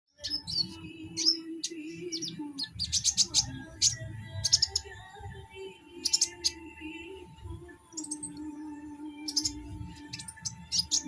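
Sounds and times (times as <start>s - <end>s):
bird chirping high: 0.1s - 5.1s, 5.9s - 6.7s, 9.2s - 11.0s.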